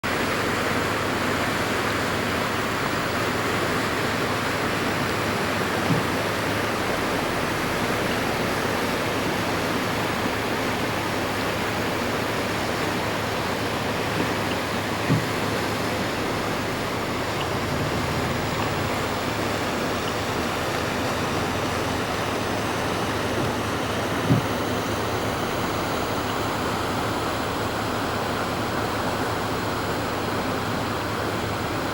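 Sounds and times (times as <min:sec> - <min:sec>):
flooded creek rushing: 0:00.0 - 0:31.9
soft bumps: 0:05.7 - 0:06.5, 0:14.1 - 0:21.9, 0:23.1 - 0:24.7.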